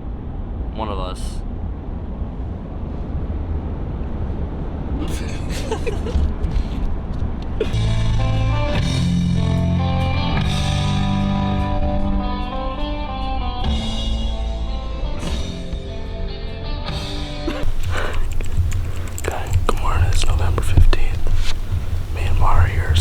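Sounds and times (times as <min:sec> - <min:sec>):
rock music with electric guitar: 0:07.6 - 0:18.2.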